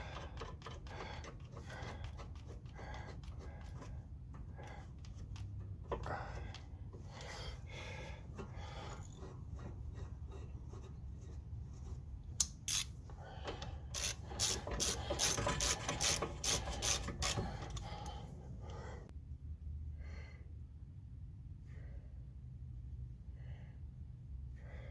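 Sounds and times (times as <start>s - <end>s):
hand tool scraping metal: 0.0s - 6.6s, 8.0s - 12.9s, 14.0s - 17.8s.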